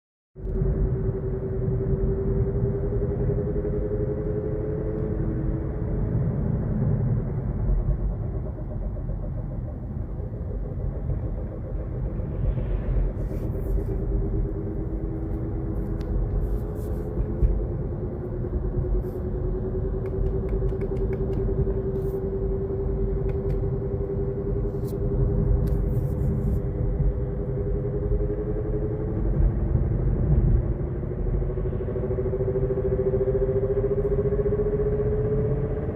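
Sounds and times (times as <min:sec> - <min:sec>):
electric car drive whine: 0:00.4 - 0:35.9
low road rumble: 0:00.4 - 0:35.9.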